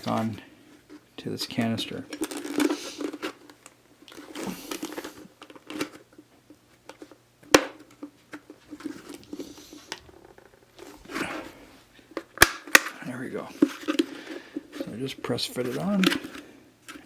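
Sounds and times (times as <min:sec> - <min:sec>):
plastic parts scraping and knocking: 0:12.0 - 0:17.0.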